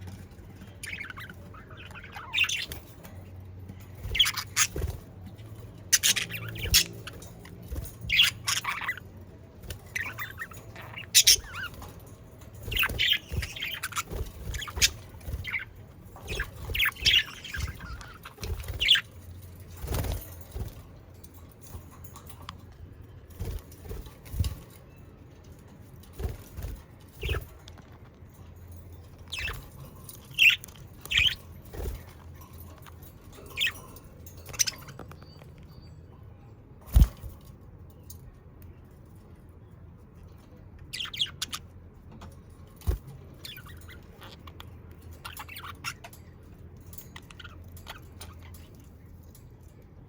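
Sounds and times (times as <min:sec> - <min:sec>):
budgerigars chattering and squawking: 0:00.6 - 0:02.9, 0:04.0 - 0:05.1, 0:05.8 - 0:09.1, 0:09.7 - 0:11.9, 0:12.6 - 0:19.1, 0:30.4 - 0:31.4.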